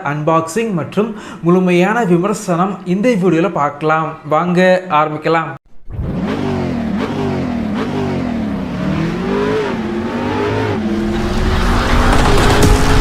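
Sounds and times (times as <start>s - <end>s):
car engine revving: 5.8s - 13.0s
rushing noise: 10.1s - 13.0s.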